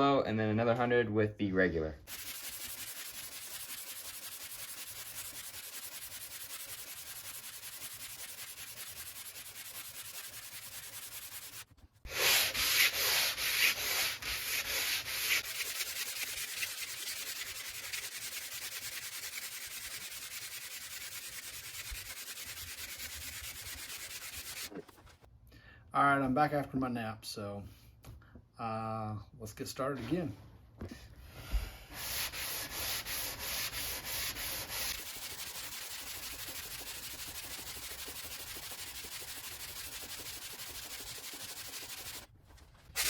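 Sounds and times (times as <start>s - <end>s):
sandpaper rasping on chalkboard: 2.1s - 24.7s, 31.9s - 42.3s.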